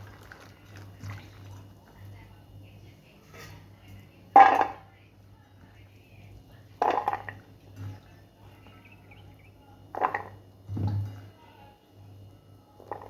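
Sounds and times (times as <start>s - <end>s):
water splashing in a bowl: 0.0s - 2.1s, 6.7s - 11.4s, 12.8s - 13.0s.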